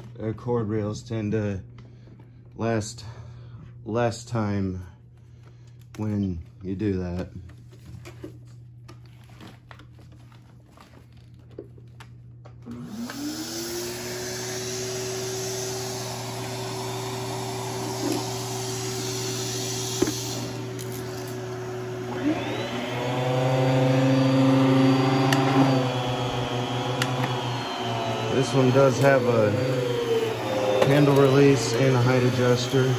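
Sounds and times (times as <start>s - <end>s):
vacuum cleaner motor whining: 12.6s - 32.9s.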